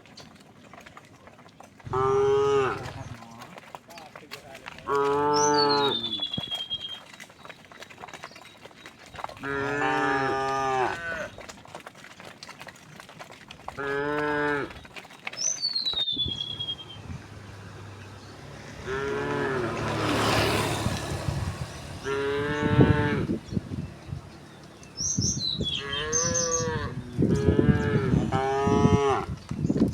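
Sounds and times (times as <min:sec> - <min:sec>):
cows mooing: 0:01.8 - 0:03.6, 0:04.8 - 0:06.3, 0:09.3 - 0:11.5, 0:13.7 - 0:14.8, 0:16.4 - 0:23.7, 0:25.2 - 0:29.4.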